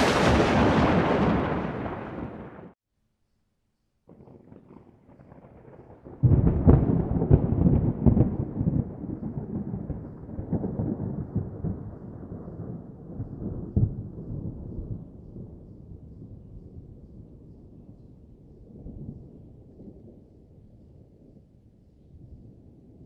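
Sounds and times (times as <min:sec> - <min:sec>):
thunder rumbling and cracking: 0:00.0 - 0:02.8, 0:04.1 - 0:17.4.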